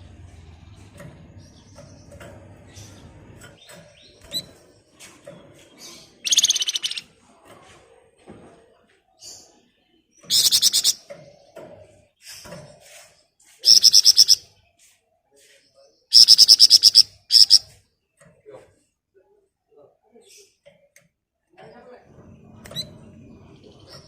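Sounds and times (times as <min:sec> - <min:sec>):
songbird chirps: 0:00.0 - 0:24.0
fast high rattling bird trill: 0:06.2 - 0:07.0, 0:10.3 - 0:11.0, 0:13.6 - 0:14.4, 0:16.1 - 0:17.6.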